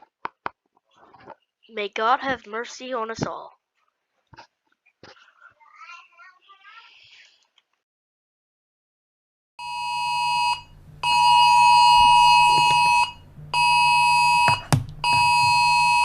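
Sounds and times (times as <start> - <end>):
electronic alarm buzzer blasts: 9.6 - 16.0
low hum: 9.7 - 16.0
sharp knock: 14.4 - 15.7.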